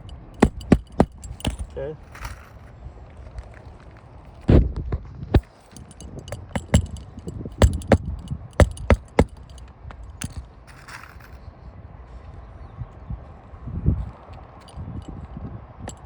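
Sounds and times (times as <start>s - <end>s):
hammer striking nail: 0.0s - 2.4s, 5.4s - 9.6s, 10.2s - 11.1s.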